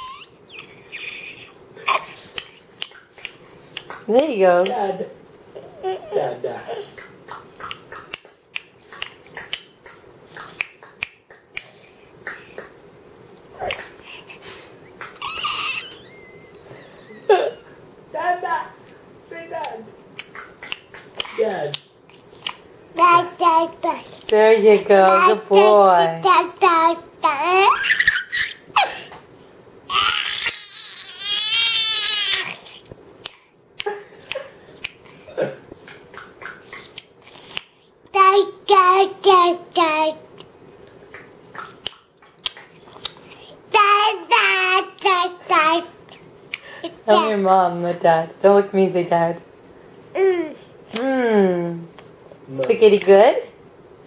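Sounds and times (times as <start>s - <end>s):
baby crying: 0.0s - 0.3s, 15.2s - 17.5s, 29.9s - 32.8s
baby vocal sound: 0.0s - 3.0s, 22.4s - 24.3s, 24.9s - 29.0s, 29.9s - 33.4s, 50.1s - 51.2s
baby eating with sharp clicks and smacks: 1.9s - 4.9s, 6.8s - 15.2s, 19.6s - 24.4s, 32.3s - 47.0s
faint clicks and smacks: 40.3s - 43.5s.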